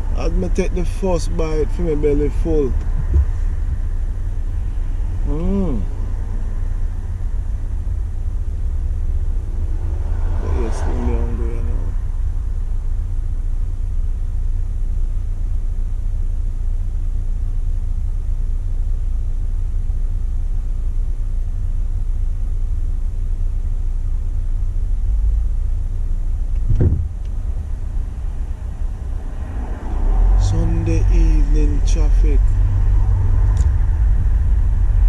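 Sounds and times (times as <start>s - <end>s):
car interior rumble: 0.0s - 35.0s
short thump: 2.8s - 3.4s, 26.5s - 27.4s.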